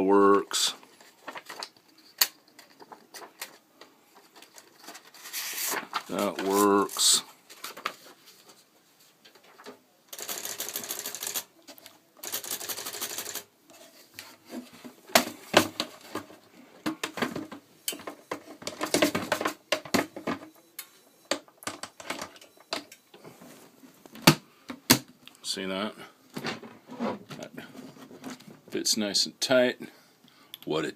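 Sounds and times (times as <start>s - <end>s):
typewriter clacking: 10.1s - 11.5s, 12.2s - 13.5s.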